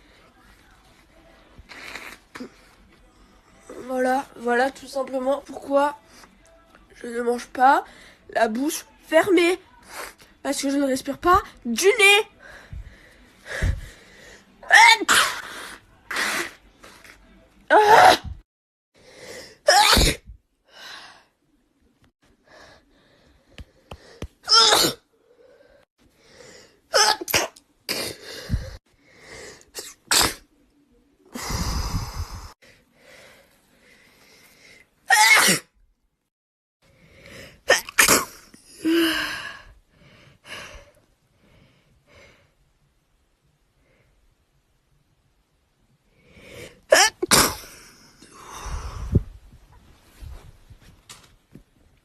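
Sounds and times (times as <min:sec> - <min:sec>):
sniffs: 0:01.7 - 0:02.5
woman sneezing: 0:14.6 - 0:16.6, 0:19.7 - 0:20.3, 0:24.5 - 0:25.0, 0:29.8 - 0:30.4, 0:35.1 - 0:35.7, 0:37.7 - 0:38.4
gasping in-breaths: 0:31.3 - 0:34.8.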